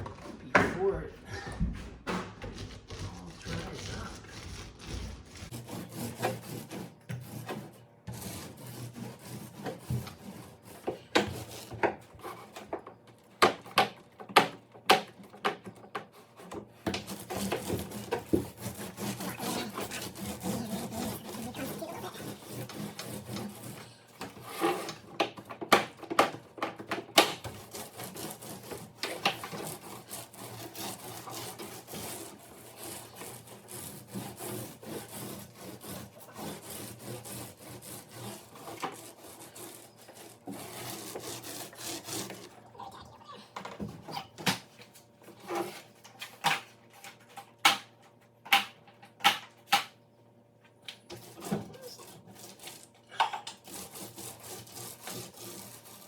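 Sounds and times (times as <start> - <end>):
scraping and rubbing: 1.6 - 12.6, 16.2 - 25.2, 27.4 - 42.6, 53.6 - 56.0.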